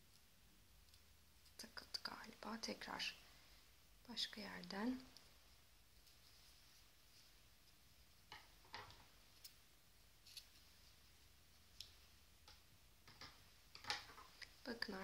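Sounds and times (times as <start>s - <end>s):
yarn rustling: 5.2s - 12.2s.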